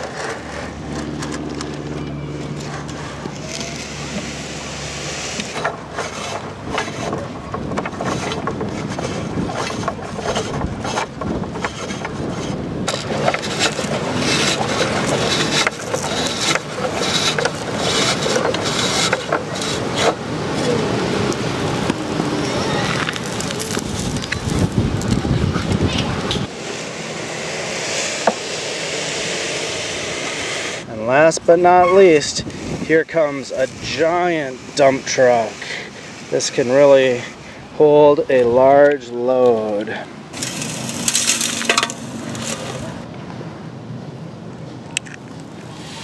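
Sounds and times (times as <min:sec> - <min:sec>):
knocks and scrapes: 0:00.0 - 0:20.7, 0:40.3 - 0:43.1
wind buffeting microphone: 0:05.8 - 0:26.8, 0:30.9 - 0:35.6.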